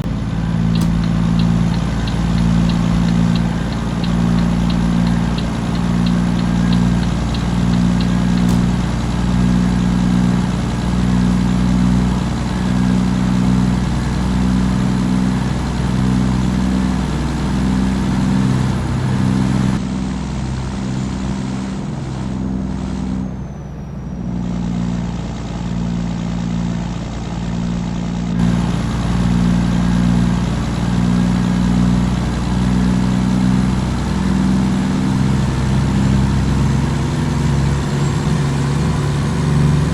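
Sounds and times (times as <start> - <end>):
diesel truck engine idling: 0.0 - 39.9.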